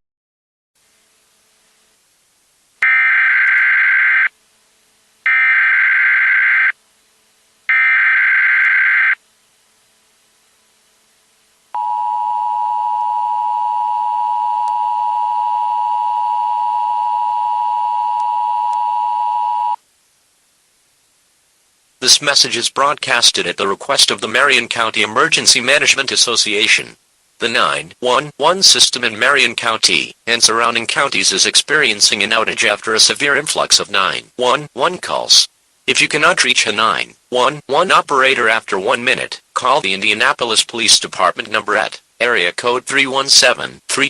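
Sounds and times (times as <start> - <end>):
data tone bursts: 2.8 - 4.3, 5.3 - 6.7, 7.7 - 9.2, 11.8 - 19.8
two-tone attention signal: 11.8 - 19.8.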